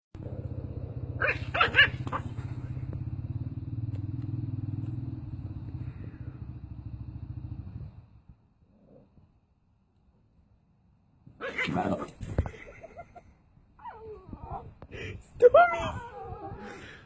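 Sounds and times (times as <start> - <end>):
engine running: 0.2 - 8.2
small dog barking: 1.2 - 2.4.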